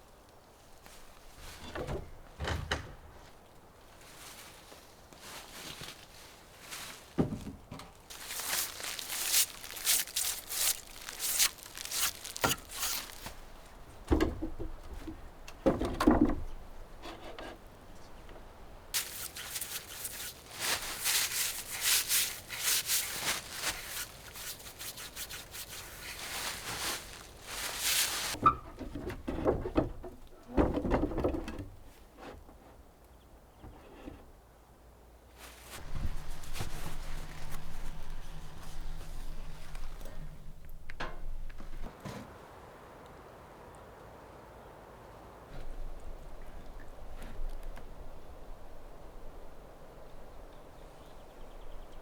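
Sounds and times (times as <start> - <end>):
rubbing and scraping strokes: 8.1 - 13.4, 19.0 - 28.4, 35.5 - 41.9
dull knocks: 14.0 - 16.6.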